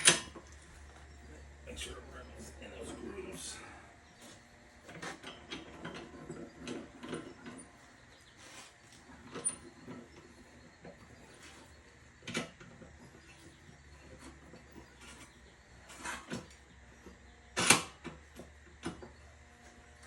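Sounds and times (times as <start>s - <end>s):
metal scraping on tire: 4.2s - 17.8s.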